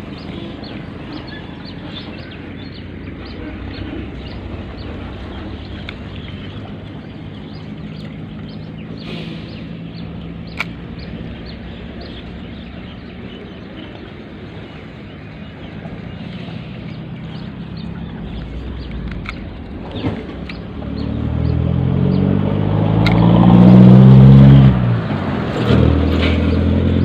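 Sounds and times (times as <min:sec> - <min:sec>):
low engine hum: 0:00.0 - 0:27.0
sharp click: 0:18.8 - 0:20.6, 0:23.0 - 0:23.3.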